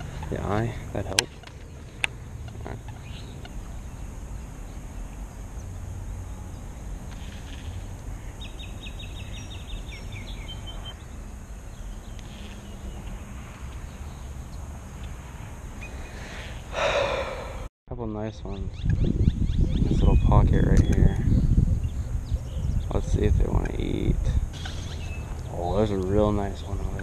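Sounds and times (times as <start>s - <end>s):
small bird chirping: 0.0s - 15.2s, 24.5s - 27.0s.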